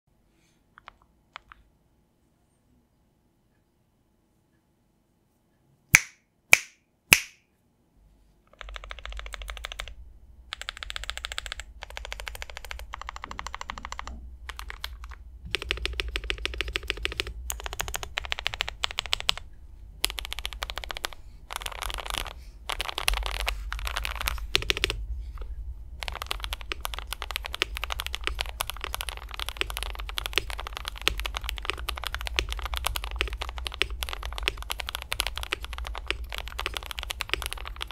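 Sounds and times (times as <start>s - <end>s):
mechanical keyboard typing: 0.8s - 1.6s, 8.5s - 25.0s, 26.0s - 37.9s
loud sharp clicks: 6.0s - 7.5s.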